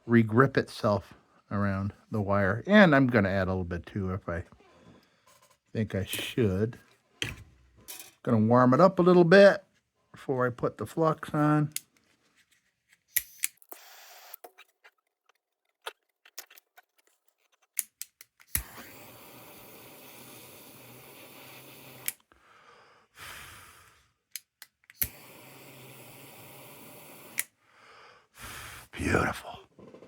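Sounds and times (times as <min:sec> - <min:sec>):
small handling clicks: 0:13.0 - 0:18.8, 0:22.0 - 0:22.3, 0:24.3 - 0:25.2
gas torch flame hissing: 0:13.2 - 0:14.4, 0:18.5 - 0:22.3, 0:24.9 - 0:27.6
gas torch igniter click: 0:18.0 - 0:22.3, 0:24.4 - 0:27.5.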